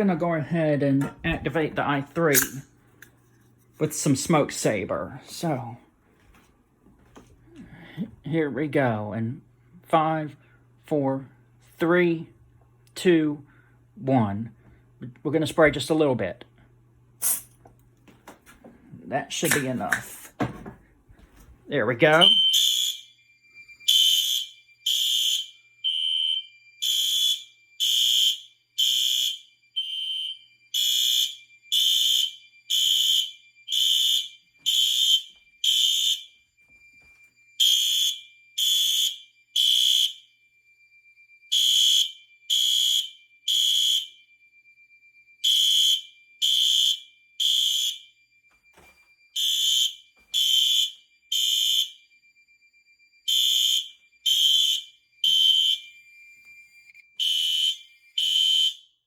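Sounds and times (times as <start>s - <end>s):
fire alarm horns blasting: 21.7s - 59.0s.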